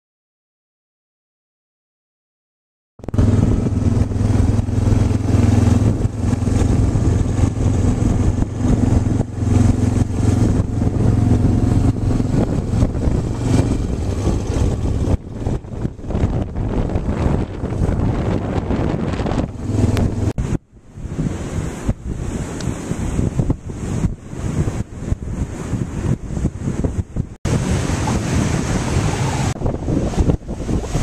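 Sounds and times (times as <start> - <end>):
engine running: 3.0 - 21.0.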